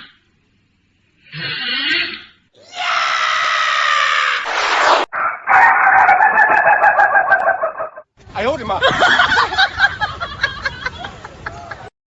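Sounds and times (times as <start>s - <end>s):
cartoon snoring: 1.3s - 2.3s.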